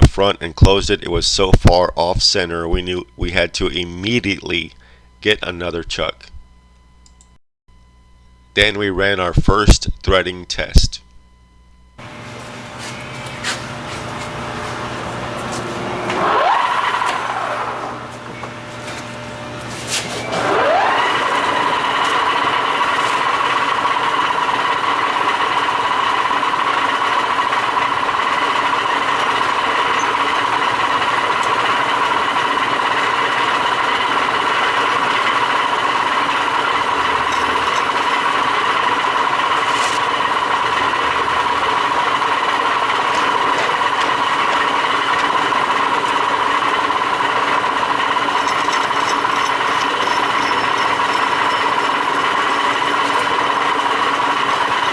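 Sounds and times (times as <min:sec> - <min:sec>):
lathe machine whine: 0:20.2 - 0:54.9.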